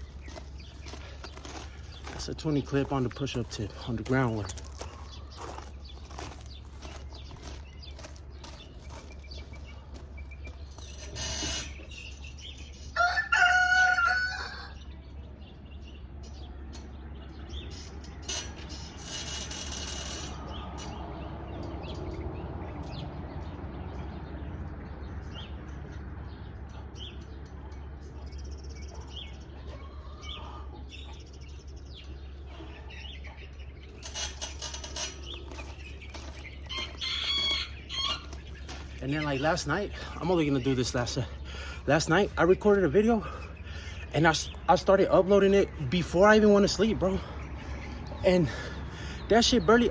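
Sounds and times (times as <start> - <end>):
rooster crowing: 12.9 - 14.9, 36.7 - 38.4.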